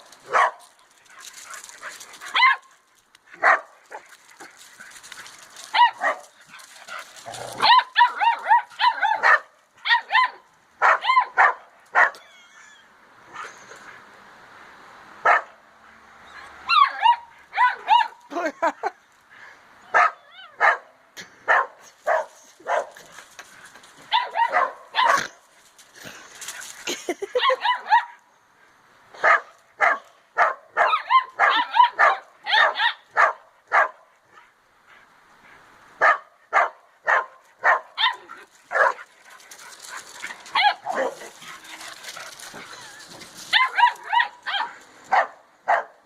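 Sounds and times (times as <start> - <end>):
puppies yapping: 3.4 - 13.9, 22.1 - 25.4, 36.6 - 45.9
puppy whining: 12.2 - 12.9.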